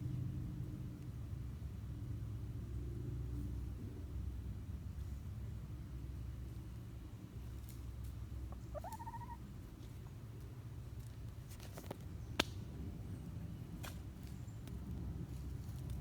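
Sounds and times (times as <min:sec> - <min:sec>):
chicken call: 0:08.7 - 0:09.4.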